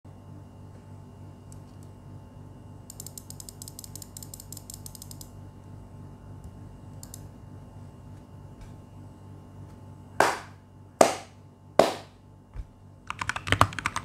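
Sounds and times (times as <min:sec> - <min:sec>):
mechanical keyboard keystroke clacks: 0:13.1 - 0:14.0.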